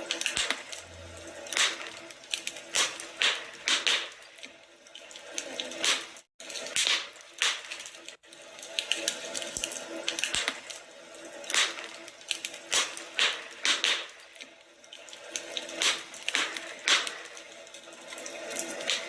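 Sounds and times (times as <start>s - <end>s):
wood fire crackling: 0.0s - 19.0s
fire pops: 0.1s - 4.5s, 5.2s - 8.2s, 8.8s - 10.8s, 11.4s - 14.5s, 15.6s - 17.4s.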